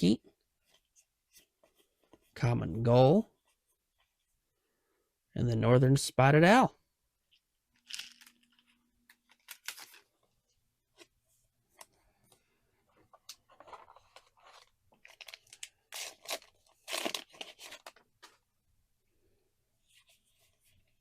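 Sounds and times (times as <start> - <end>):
card packaging rustling: 7.8 - 10.4, 13.1 - 18.4.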